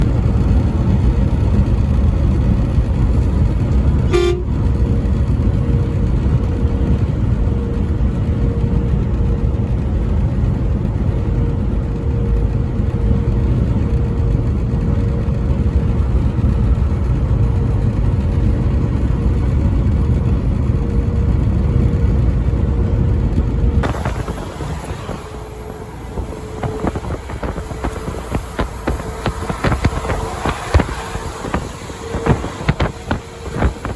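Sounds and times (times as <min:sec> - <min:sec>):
vehicle engine and road rumble: 0:00.0 - 0:33.9
irregular crackling: 0:23.8 - 0:33.9.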